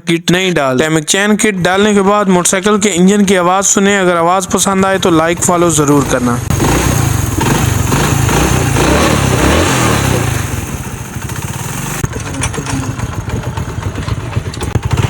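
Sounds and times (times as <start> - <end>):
motorcycle engine running: 3.4 - 15.0.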